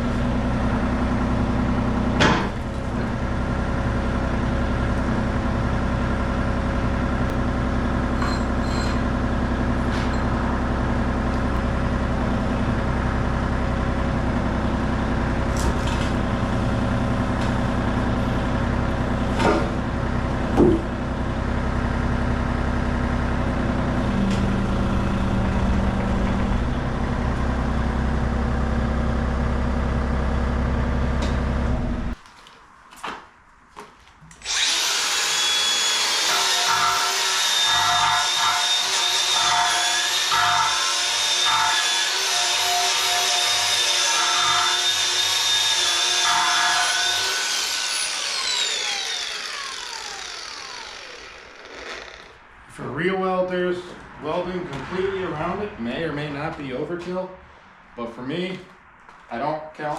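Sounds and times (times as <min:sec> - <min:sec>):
excavator engine running: 0:00.0 - 0:32.2.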